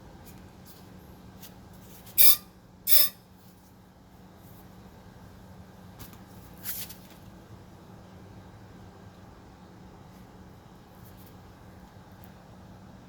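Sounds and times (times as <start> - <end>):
faint high scrape: 2.2 - 3.2.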